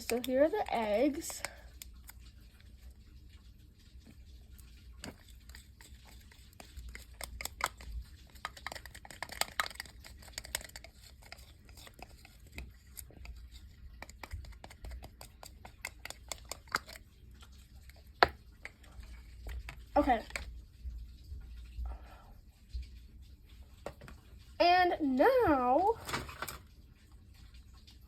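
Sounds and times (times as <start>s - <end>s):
slime clicking and crackling: 4.7s - 17.2s.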